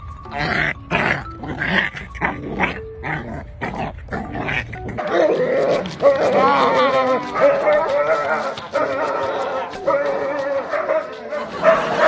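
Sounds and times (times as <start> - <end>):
dog barking rapidly: 3.8 - 12.0
dog howling: 4.5 - 12.0.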